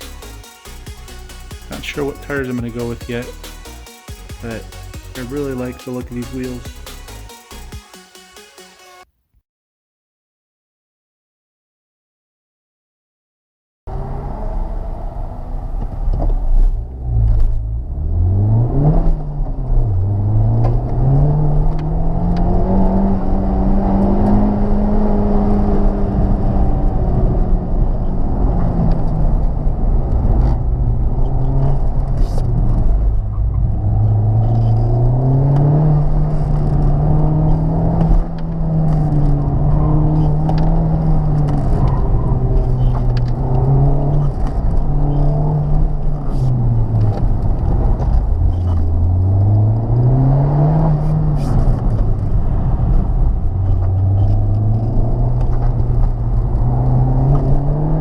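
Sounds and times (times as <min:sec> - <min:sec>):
car engine revving hard: 0:16.8 - 0:58.0.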